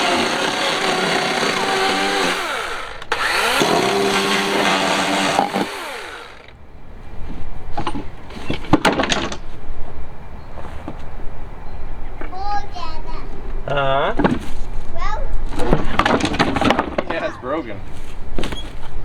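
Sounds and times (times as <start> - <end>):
electric chainsaw cutting wood: 0.0 - 6.6.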